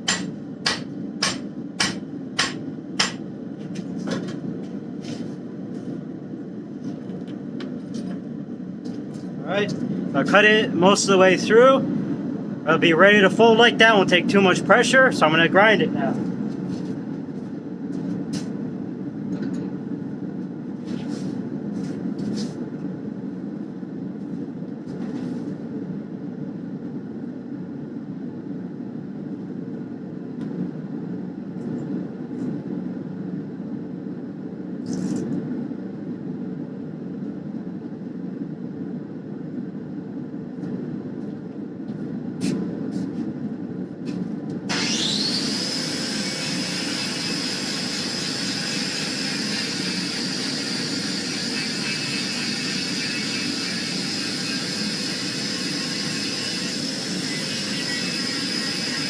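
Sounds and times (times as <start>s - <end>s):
angle grinder whining: 44.7s - 59.0s.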